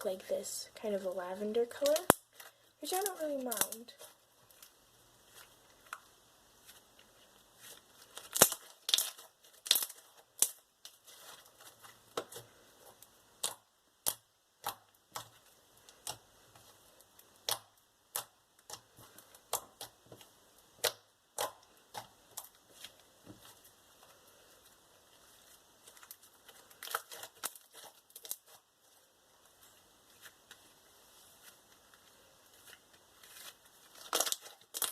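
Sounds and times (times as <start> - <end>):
slime clicking and popping: 8.1 - 11.0, 13.4 - 16.2, 17.2 - 20.0, 20.7 - 22.5.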